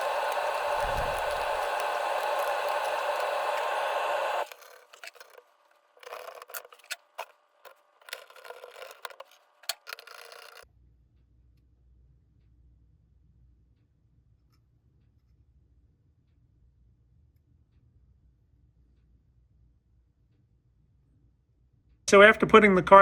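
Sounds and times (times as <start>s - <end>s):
steady hiss: 0.0s - 4.5s
screwdriver and screws clicking: 0.0s - 5.4s, 6.0s - 10.6s.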